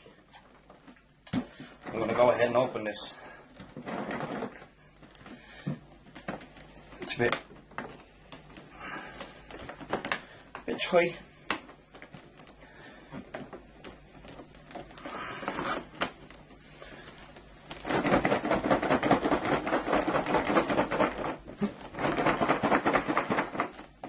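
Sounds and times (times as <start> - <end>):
cardboard scraping and rustling: 3.6 - 4.8, 14.3 - 24.0.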